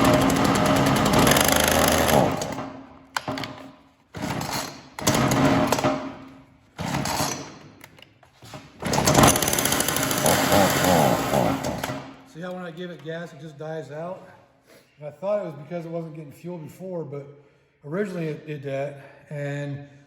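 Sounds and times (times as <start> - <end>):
chainsaw engine surging and dying: 0.0 - 2.7, 8.8 - 12.1.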